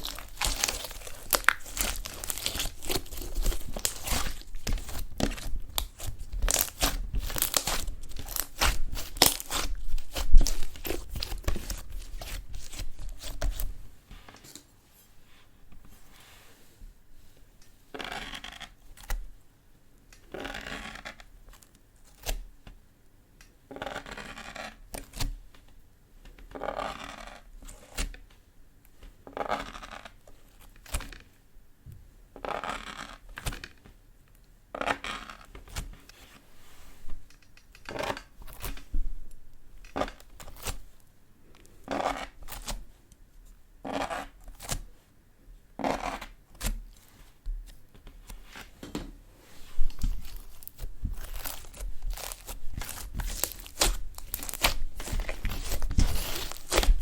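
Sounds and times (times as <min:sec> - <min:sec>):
slime squishing: 0:00.0 - 0:13.9, 0:49.4 - 0:57.0.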